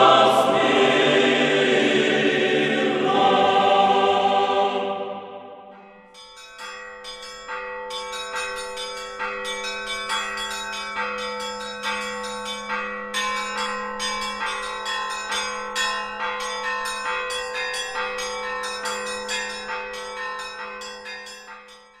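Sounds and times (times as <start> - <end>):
large bells ringing: 4.7 - 22.0
small church bells pealing: 5.7 - 22.0.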